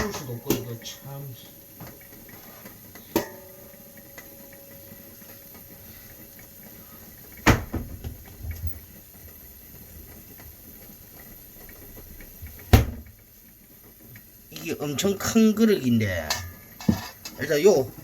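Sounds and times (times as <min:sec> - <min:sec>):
cupboard knocking: 0:07.4 - 0:08.2.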